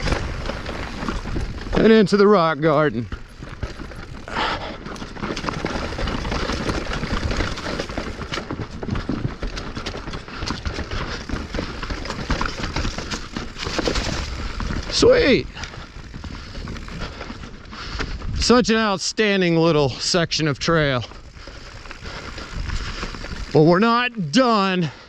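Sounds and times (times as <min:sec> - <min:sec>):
bike frame and chain rattling: 0:00.0 - 0:25.0
tyres knocking over rocks: 0:03.2 - 0:15.0.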